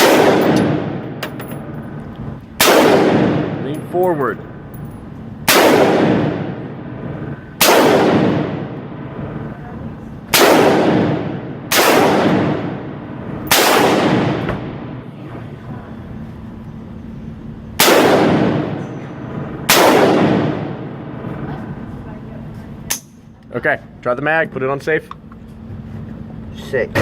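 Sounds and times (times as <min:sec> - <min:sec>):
rifle shots echoing: 0:00.0 - 0:01.7, 0:02.6 - 0:04.0, 0:05.4 - 0:09.3, 0:10.3 - 0:15.1, 0:17.8 - 0:21.5.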